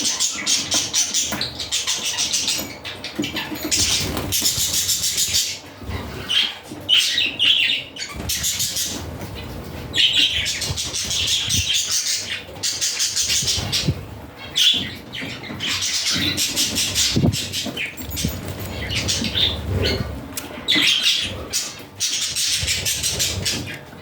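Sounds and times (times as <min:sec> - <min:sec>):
budgerigars chattering and chirping: 0:00.0 - 0:23.9
wings fluttering: 0:03.2 - 0:06.4.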